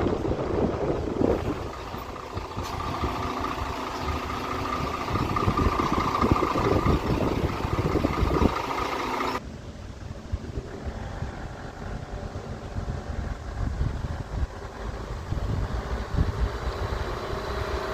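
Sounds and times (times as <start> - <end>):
low fluctuating rumble: 0.0 - 17.1
engine running: 0.0 - 17.9.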